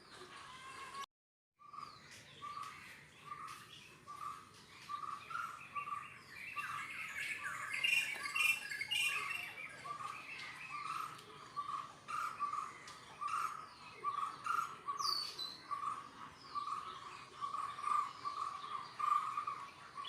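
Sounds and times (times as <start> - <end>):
birds chirping: 1.6 - 20.0.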